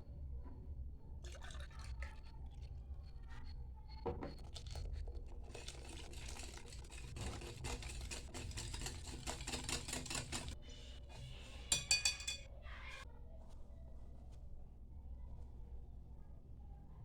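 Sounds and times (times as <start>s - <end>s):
utensil scraping mixing bowl: 4.4s - 12.4s.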